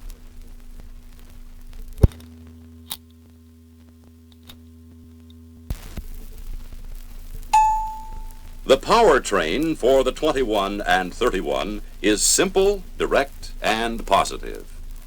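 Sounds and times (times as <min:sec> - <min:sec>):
record surface noise: 0:00.0 - 0:15.0
record needle clicks: 0:08.8 - 0:15.0.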